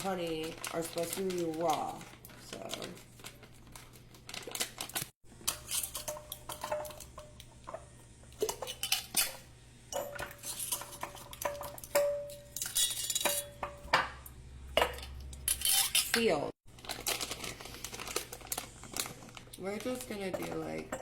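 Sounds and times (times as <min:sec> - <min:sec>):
utensils and dishes clinking: 0:05.4 - 0:17.3.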